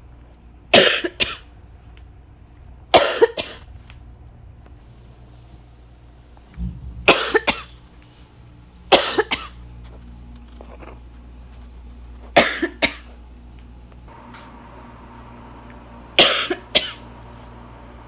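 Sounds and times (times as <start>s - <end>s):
low thump: 6.6s - 8.3s
person coughing: 7.1s - 7.8s, 12.4s - 13.0s, 16.2s - 17.0s.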